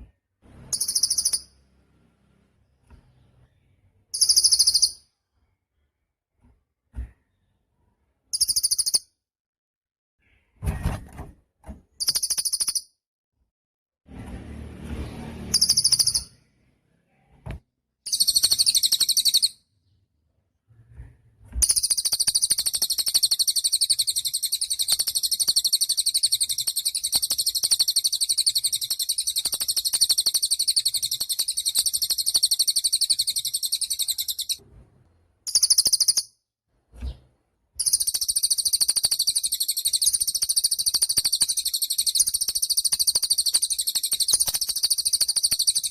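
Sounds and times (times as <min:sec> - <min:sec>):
songbird trilling song: 0:00.7 - 0:01.6, 0:03.0 - 0:05.0, 0:08.3 - 0:09.0, 0:12.0 - 0:12.9, 0:15.5 - 0:16.4, 0:18.1 - 0:19.6, 0:21.6 - 0:34.6, 0:35.5 - 0:36.3, 0:37.8 - 0:45.9.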